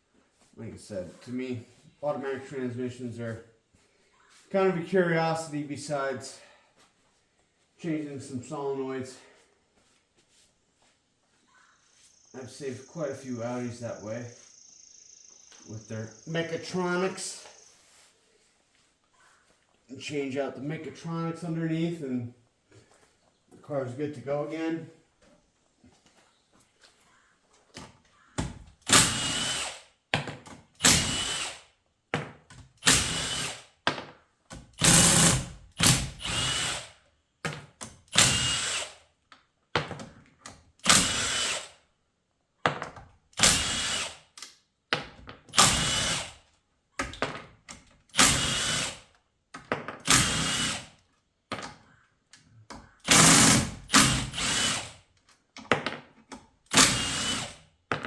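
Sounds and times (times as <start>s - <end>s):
power tool whirring in bursts: 28.9s - 29.9s, 30.8s - 31.7s, 32.8s - 33.7s, 34.8s - 37.0s, 38.1s - 39.0s, 40.8s - 41.8s, 43.4s - 44.4s, 45.5s - 46.4s, 48.1s - 49.0s, 50.0s - 51.0s, 53.0s - 55.0s, 56.7s - 57.6s.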